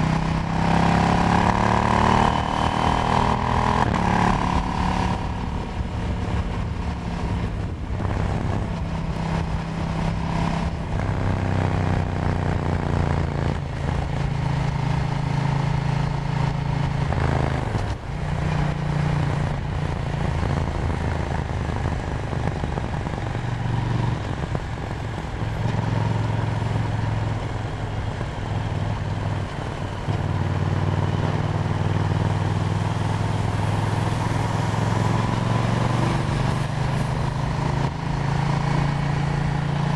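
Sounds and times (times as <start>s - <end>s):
motorcycle engine running: 0.0s - 39.9s
wind noise: 0.0s - 39.9s.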